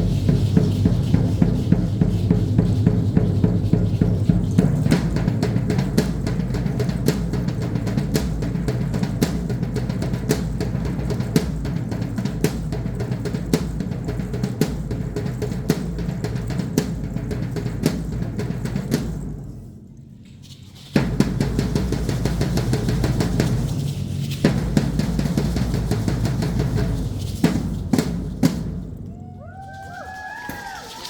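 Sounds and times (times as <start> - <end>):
low booming rumble: 0.0 - 13.3
drum beaten in steady rhythm: 0.0 - 19.6, 20.8 - 31.0.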